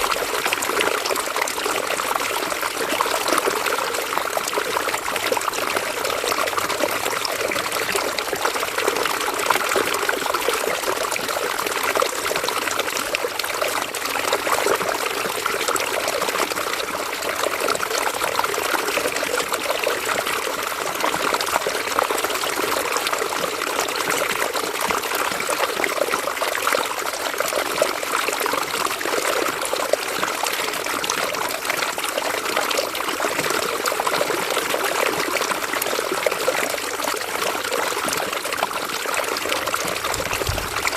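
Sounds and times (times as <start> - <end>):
river water running over rocks: 31.0 - 40.9.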